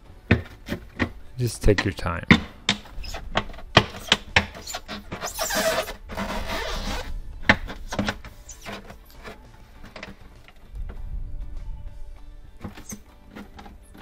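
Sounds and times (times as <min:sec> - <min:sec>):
plastic duct scraping: 0:02.9 - 0:10.7, 0:12.6 - 0:14.0.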